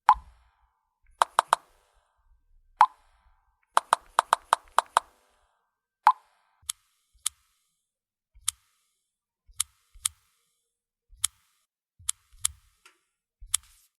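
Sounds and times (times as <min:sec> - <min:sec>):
smartphone keyboard tap clicks: 0:01.2 - 0:01.7, 0:03.8 - 0:05.1.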